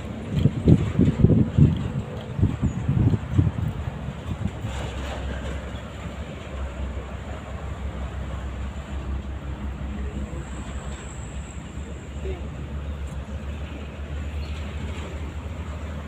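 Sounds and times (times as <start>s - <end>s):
wind rumbling on microphone: 0.0s - 9.8s.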